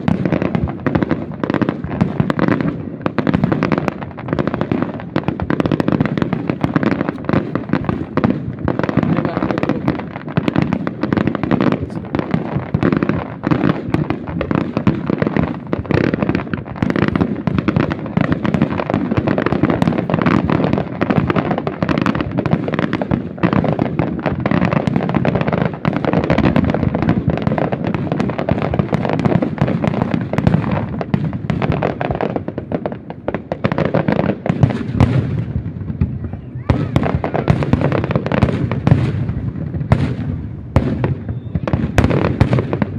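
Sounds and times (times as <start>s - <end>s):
fireworks bangs and crackling: 0.0s - 42.9s.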